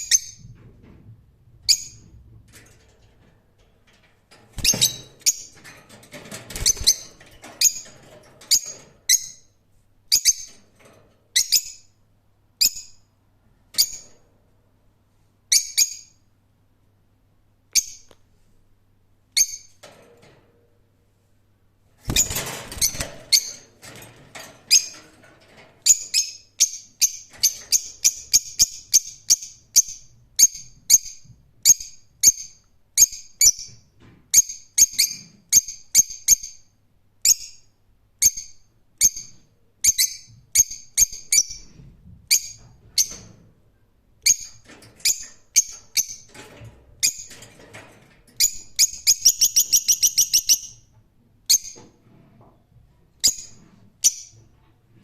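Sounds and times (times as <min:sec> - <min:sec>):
bird chirping: 0:48.4 - 0:50.8.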